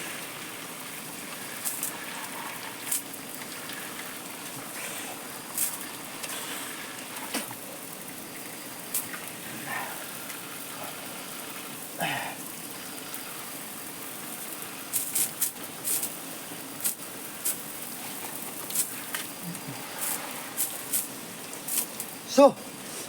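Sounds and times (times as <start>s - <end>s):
water pouring from pipe: 0.0s - 23.0s
water splashes: 0.0s - 23.0s
short vocal sound: 19.4s - 19.9s.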